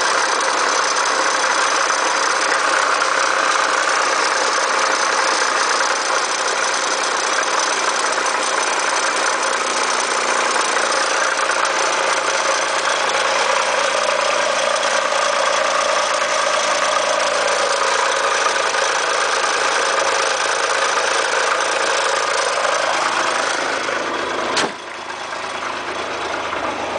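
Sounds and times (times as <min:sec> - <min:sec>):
car engine running: 0:00.0 - 0:26.9
sharp click: 0:24.6 - 0:24.8.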